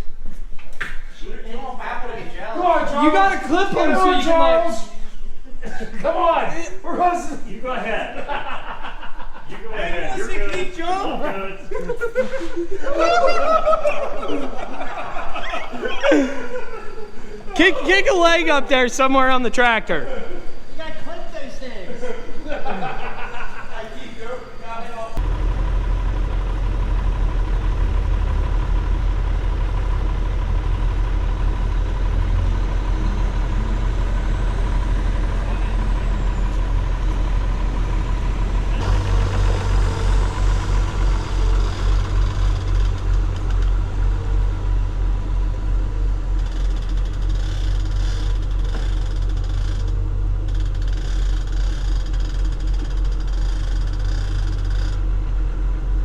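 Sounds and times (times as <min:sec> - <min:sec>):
large engine rumbling: 0:14.2 - 0:19.8, 0:23.8 - 0:56.0.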